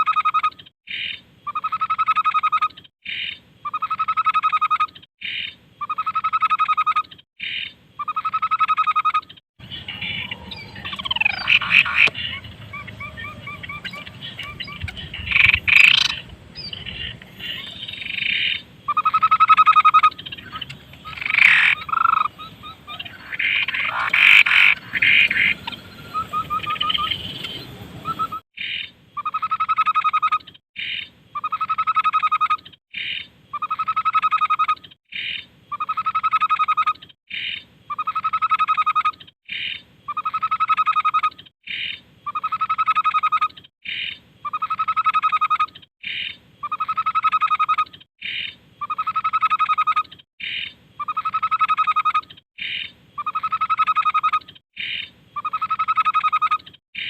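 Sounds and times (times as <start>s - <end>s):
bird song: 0.1s - 57.0s.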